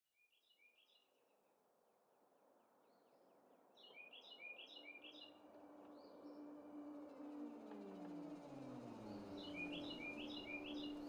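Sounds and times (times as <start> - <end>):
songbirds chirping: 2.8 - 11.0.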